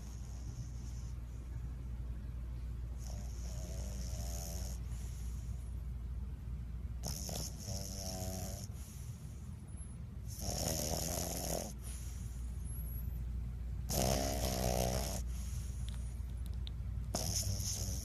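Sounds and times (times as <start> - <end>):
dog snoring: 0.0 - 1.4, 3.0 - 5.7, 7.0 - 9.5, 10.2 - 13.0, 13.8 - 16.2, 17.1 - 18.0.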